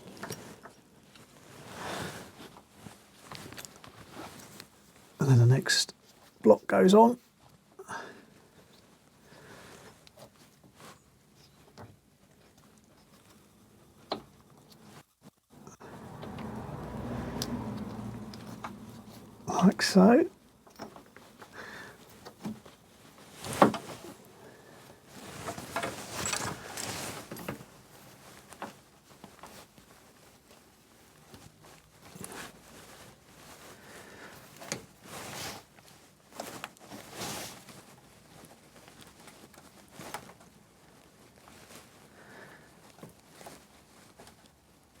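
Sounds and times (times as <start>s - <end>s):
knocks clinks and scraping: 25.4s - 27.6s.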